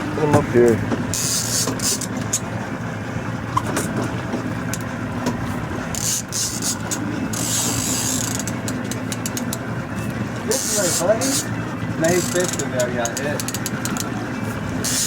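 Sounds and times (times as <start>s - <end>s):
boat motor running: 0.0s - 15.0s
fishing reel clicking and whirring: 1.1s - 2.5s, 5.9s - 9.8s, 10.4s - 15.0s.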